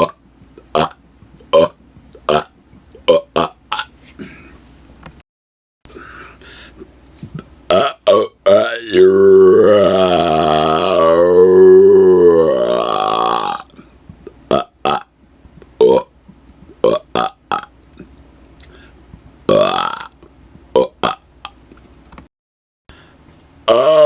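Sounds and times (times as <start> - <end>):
man burping: 0.0 - 4.5, 7.7 - 13.9, 14.5 - 15.1, 15.8 - 16.1, 16.8 - 18.1, 19.5 - 20.2, 23.7 - 24.0.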